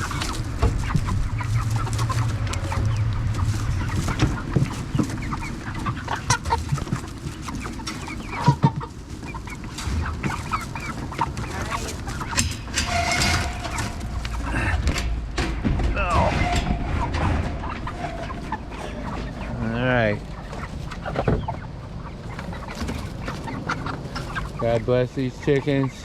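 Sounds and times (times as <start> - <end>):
chickens clucking and squawking: 0.0 - 26.0
sharp knocks: 12.3 - 18.7.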